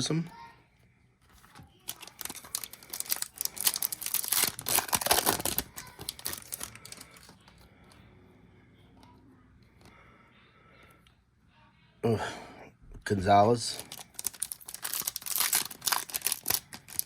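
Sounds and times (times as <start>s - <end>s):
faint handling noise: 0.7s - 8.0s
wrapper crinkling and tearing: 1.4s - 7.4s, 13.8s - 17.0s.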